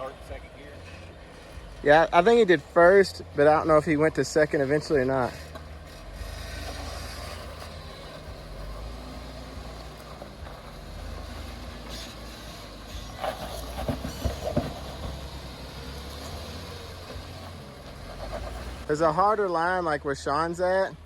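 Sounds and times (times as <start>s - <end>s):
car engine running low: 0.0s - 21.0s.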